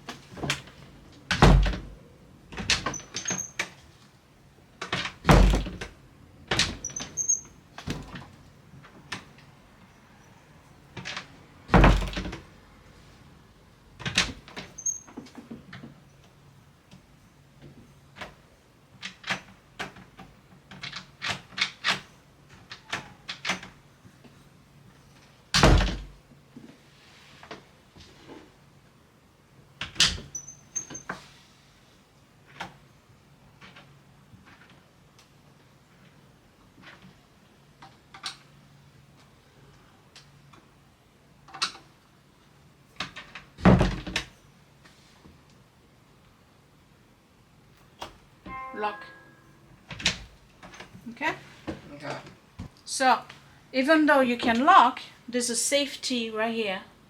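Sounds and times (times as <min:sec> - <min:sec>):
heavy deep door thunk: 0:01.3 - 0:02.0, 0:05.3 - 0:05.9, 0:25.6 - 0:26.2.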